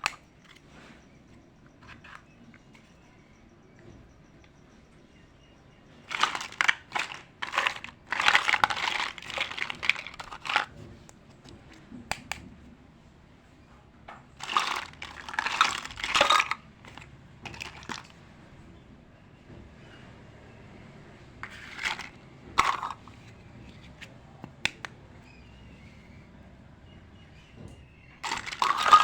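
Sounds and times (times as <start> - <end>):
plastic packaging crinkling: 6.1 - 10.7, 14.4 - 18.1, 28.2 - 29.0.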